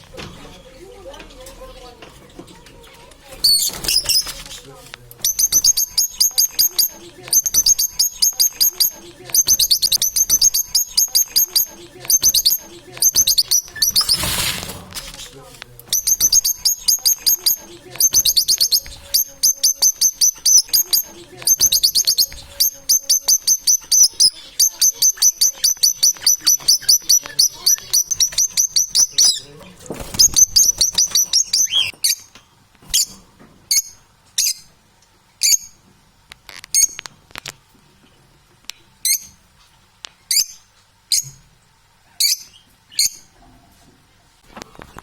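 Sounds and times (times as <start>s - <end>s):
small bird chirping: 3.4s - 4.6s, 5.2s - 15.3s, 15.9s - 34.7s
noisy rustle: 13.7s - 15.8s.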